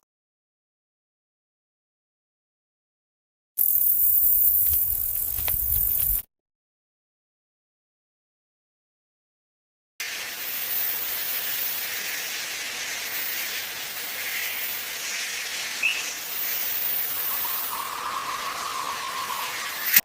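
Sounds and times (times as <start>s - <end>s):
insect calls hissing: 3.6s - 6.2s, 10.0s - 20.0s
high-pitched insect drone: 10.0s - 20.0s
short chirp: 15.4s - 20.0s.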